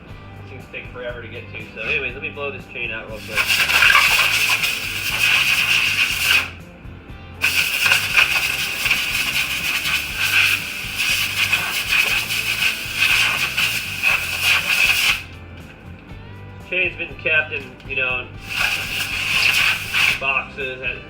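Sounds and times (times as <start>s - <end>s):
compressed air blow gun hissing: 3.2s - 6.6s, 7.4s - 15.4s, 18.4s - 20.3s.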